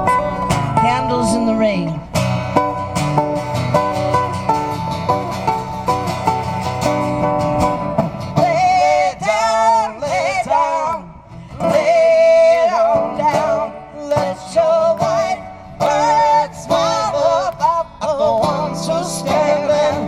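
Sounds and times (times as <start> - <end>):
woman singing folk song: 0.0 - 2.1, 8.3 - 20.0
acoustic guitar: 0.0 - 20.0.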